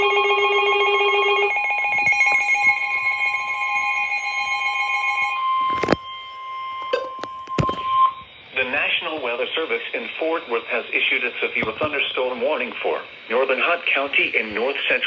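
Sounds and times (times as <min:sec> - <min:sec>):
pulsing electronic alarm tones: 0:00.0 - 0:12.2
steady warning tone: 0:00.0 - 0:15.0.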